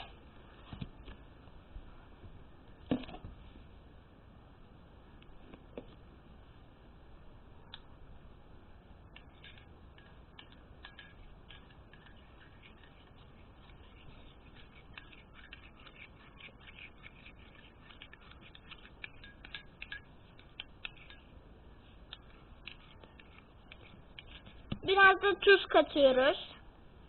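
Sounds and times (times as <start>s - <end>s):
spoon scraping in a bowl: 9.2s - 21.3s, 22.1s - 24.7s.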